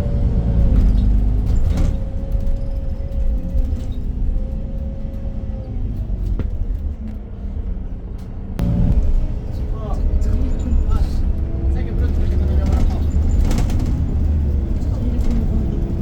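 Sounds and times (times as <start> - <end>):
bus engine and road rumble: 0.0 - 16.0
rattles and clicks: 12.1 - 16.0.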